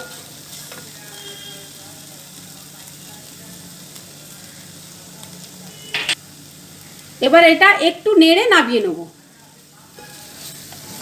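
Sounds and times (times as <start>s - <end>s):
radish frying in oil: 0.0s - 11.0s.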